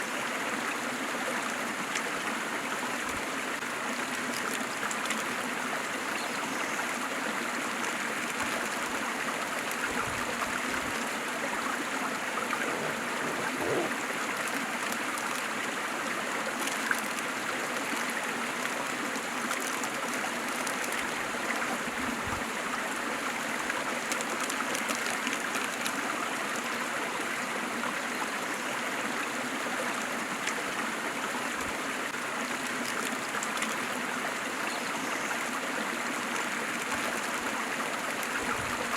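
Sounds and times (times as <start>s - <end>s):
waterfall roaring: 11.5s - 14.6s.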